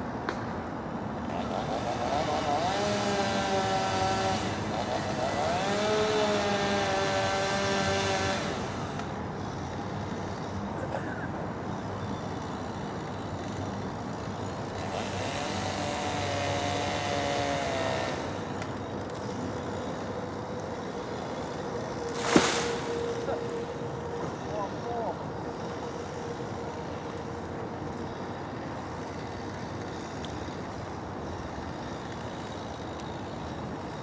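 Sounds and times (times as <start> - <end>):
chainsaw revving: 1.3 - 9.1, 14.7 - 18.6.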